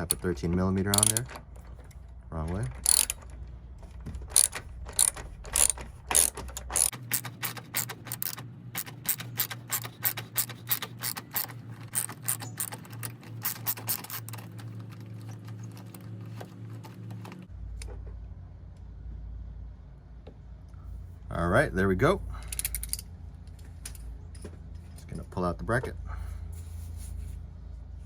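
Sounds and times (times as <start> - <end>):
socket ratchet clicking: 0.0 - 0.2, 0.9 - 2.0, 2.7 - 3.4, 4.3 - 16.1.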